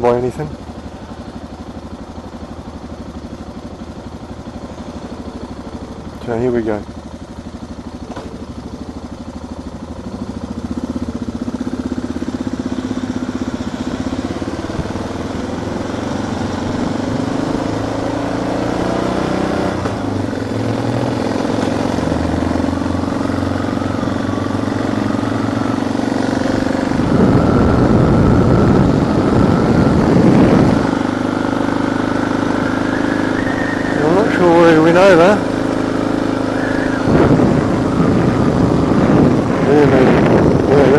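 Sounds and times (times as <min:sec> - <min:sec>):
motorcycle engine changing gear: 0:03.4 - 0:40.9
wind rush on microphone: 0:26.1 - 0:31.4, 0:36.6 - 0:40.9.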